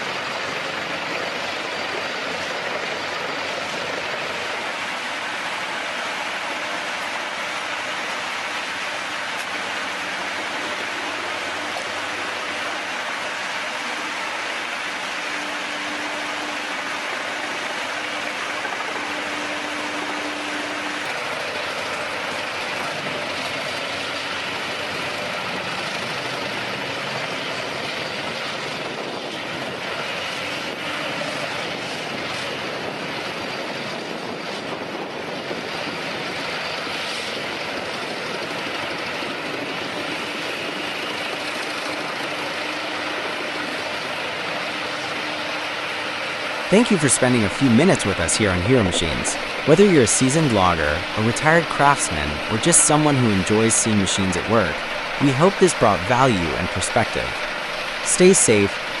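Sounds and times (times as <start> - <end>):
heavy machinery running: 41.3 - 59.0
faint hum: 46.7 - 59.0.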